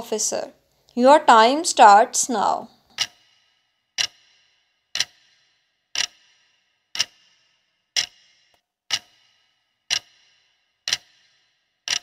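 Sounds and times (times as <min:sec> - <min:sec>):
clock ticking with ring: 0:02.8 - 0:12.0.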